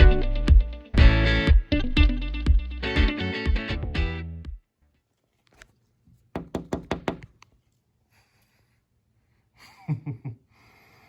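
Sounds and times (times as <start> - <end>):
sharp knocks: 6.4 - 7.3.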